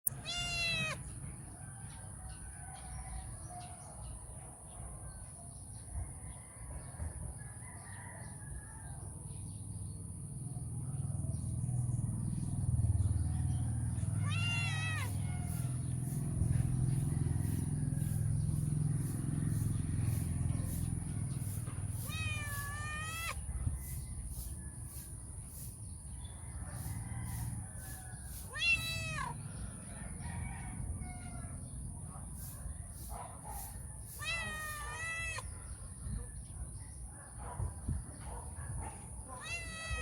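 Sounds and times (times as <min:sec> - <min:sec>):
cat meowing: 0:00.1 - 0:01.1, 0:14.2 - 0:15.7, 0:21.9 - 0:23.4, 0:28.5 - 0:29.4, 0:34.2 - 0:35.5, 0:39.3 - 0:40.0.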